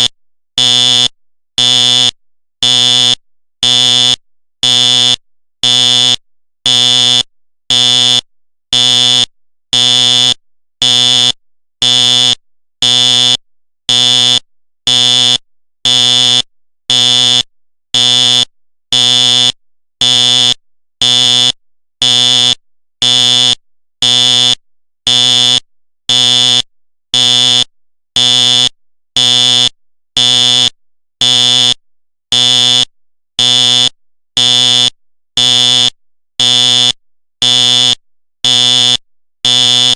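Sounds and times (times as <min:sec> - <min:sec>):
fire alarm horn honks: 0:01.6 - 0:06.1, 0:33.4 - 0:34.8.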